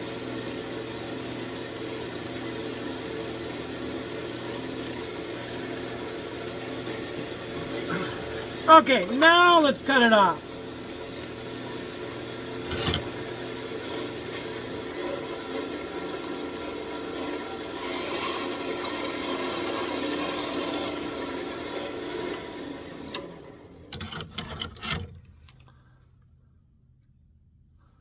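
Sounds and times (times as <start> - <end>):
lathe hum: 0.1 - 25.1
wood scraping on lathe: 3.3 - 22.4
sharp clicks and knocks: 12.7 - 13.2, 23.9 - 25.6.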